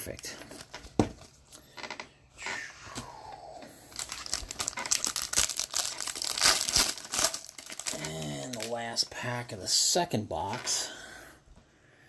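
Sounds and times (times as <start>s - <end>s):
wrapper crinkling and tearing: 3.9s - 9.5s.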